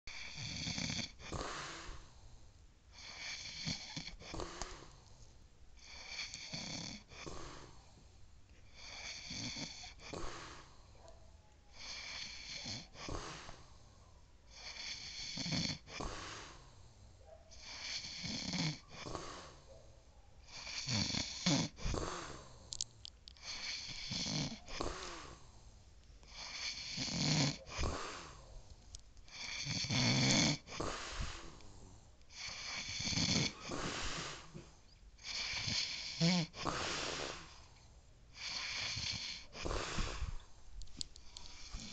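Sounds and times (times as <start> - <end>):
man snoring: 0.1 - 2.2, 2.9 - 5.0, 5.8 - 7.9, 8.7 - 10.8, 11.8 - 13.7, 14.5 - 16.8, 17.6 - 19.6, 20.5 - 22.7, 23.4 - 25.6, 26.3 - 28.6, 29.3 - 34.6, 35.2 - 37.7, 38.3 - 40.4, 41.5 - 41.9.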